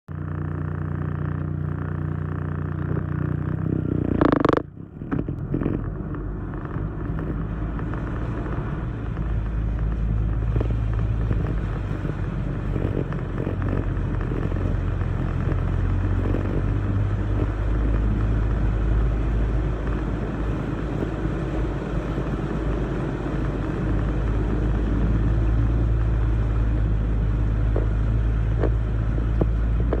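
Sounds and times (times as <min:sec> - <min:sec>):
vehicle engine running: 0:00.0 - 0:30.0.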